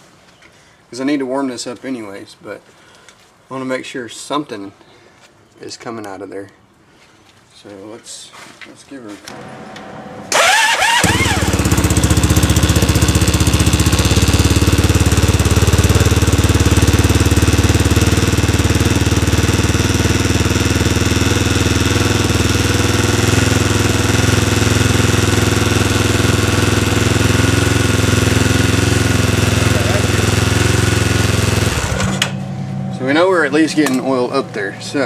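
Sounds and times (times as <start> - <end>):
engine idling: 10.3 - 35.0.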